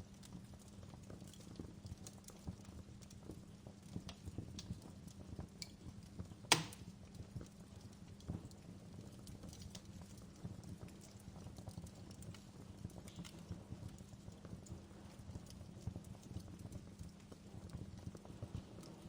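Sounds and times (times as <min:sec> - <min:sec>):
low rumble of burning fire: 0:00.0 - 0:19.0
wood fire crackling: 0:00.0 - 0:19.0.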